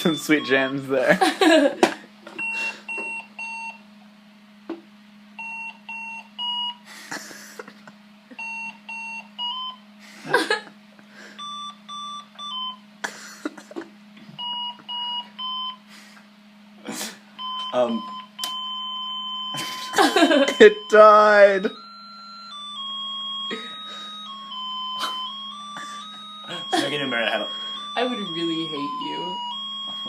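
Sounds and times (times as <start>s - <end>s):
alarm clock beeping: 0.0s - 1.8s, 2.4s - 3.8s, 5.4s - 6.8s, 8.3s - 9.8s, 11.2s - 12.8s, 14.4s - 15.8s, 17.4s - 30.0s
steady low hum: 0.0s - 30.0s.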